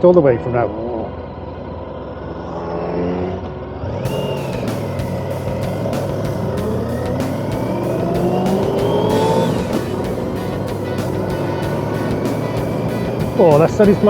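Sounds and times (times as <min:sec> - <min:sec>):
motorcycle engine accelerating: 0:02.2 - 0:14.0
steady rushing noise: 0:04.1 - 0:14.0.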